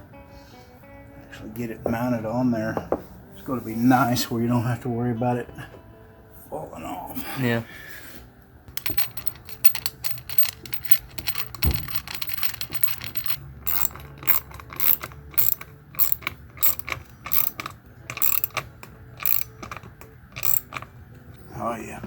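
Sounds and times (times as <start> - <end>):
ratchet wrench clicking: 8.8 - 21.4.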